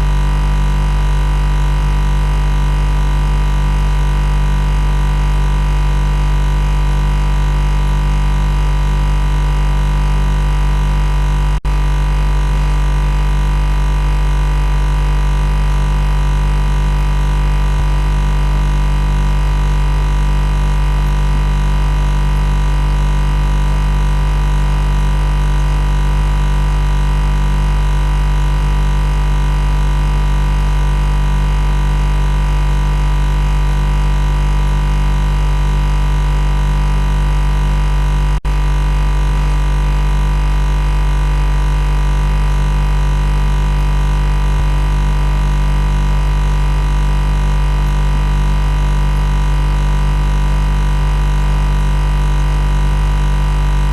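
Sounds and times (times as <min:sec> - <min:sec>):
loud machine buzz: 0:00.0 - 0:53.9.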